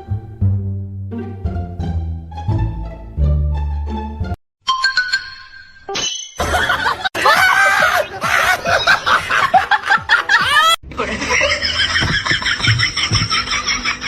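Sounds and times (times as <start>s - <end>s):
people laughing: 6.4s - 14.0s.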